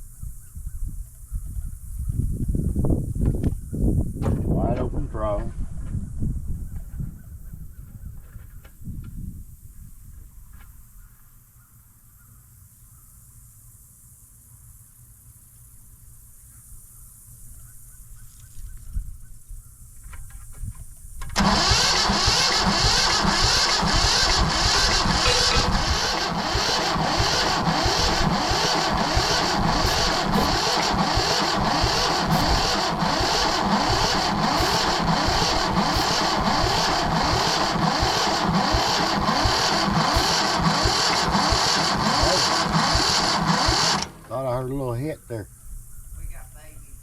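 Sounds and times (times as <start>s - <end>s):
diesel engine cranking: 21.3s - 44.9s.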